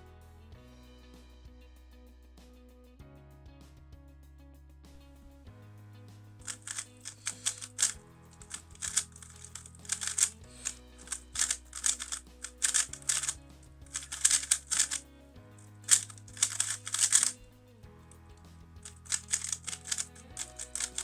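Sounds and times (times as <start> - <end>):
background music: 0.0 - 21.0
puzzle cube layers clattering: 6.5 - 15.0, 15.8 - 17.4, 18.8 - 21.0.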